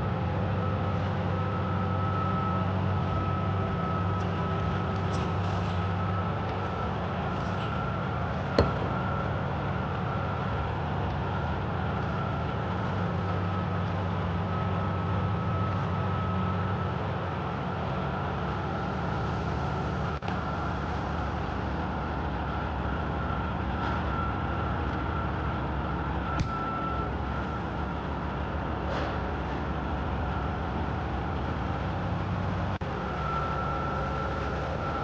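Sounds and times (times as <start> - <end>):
high whine: 0.0 - 28.6, 30.1 - 35.0
mechanical hum: 0.0 - 35.0.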